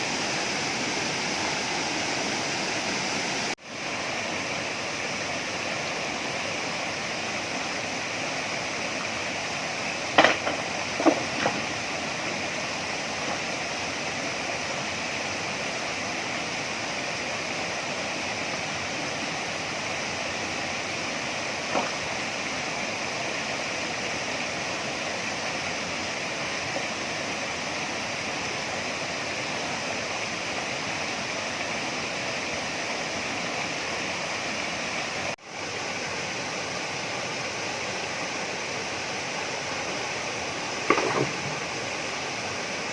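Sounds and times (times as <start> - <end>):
waterfall and stream rushing: 0.0 - 42.9
sharp knocks: 10.2 - 11.6, 40.9 - 41.6.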